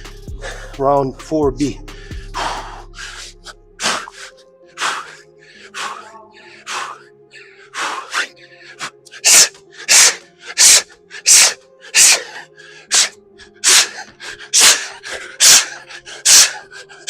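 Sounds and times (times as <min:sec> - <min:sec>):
man's sharp forceful exhalations: 0:07.8 - 0:15.7.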